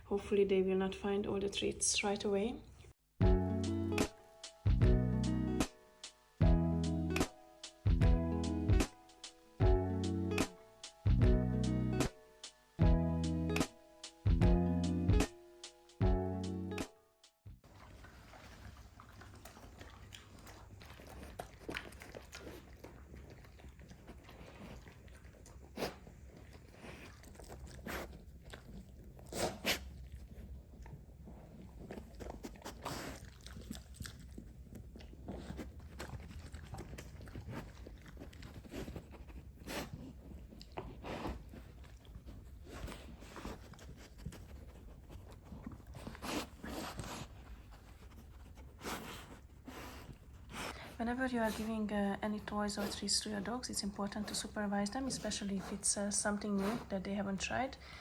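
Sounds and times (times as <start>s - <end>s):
dog crunching dry treats: 18.4s - 30.5s, 31.8s - 39.2s.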